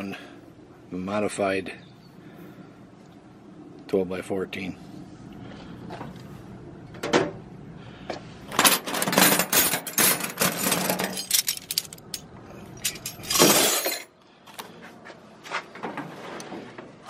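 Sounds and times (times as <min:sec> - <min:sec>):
steel wrenches clattering: 0:08.5 - 0:14.1.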